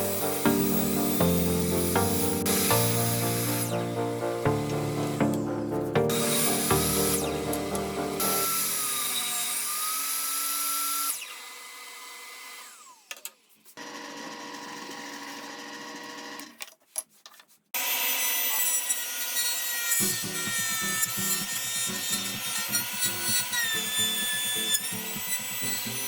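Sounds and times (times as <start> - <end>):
power tool whining on wood: 0.0 - 16.4, 17.8 - 26.0.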